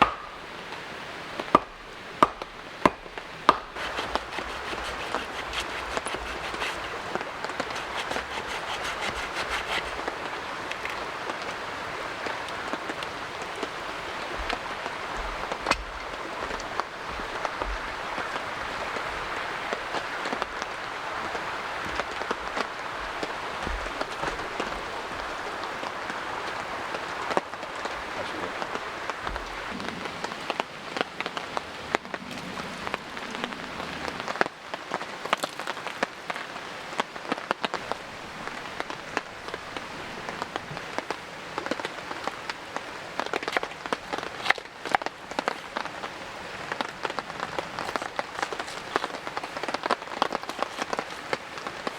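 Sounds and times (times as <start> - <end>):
light rain hiss: 0.0 - 51.9
raindrop ticks: 14.4 - 18.4.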